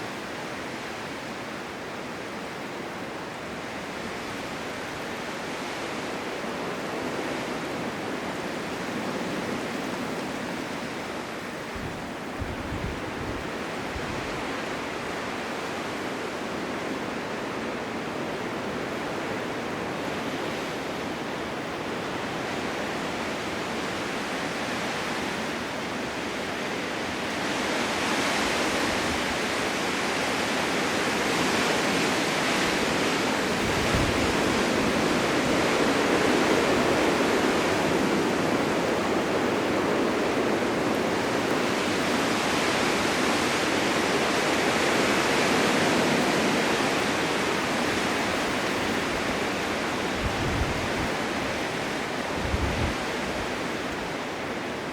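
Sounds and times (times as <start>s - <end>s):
blizzard wind rushing: 0.0s - 54.9s.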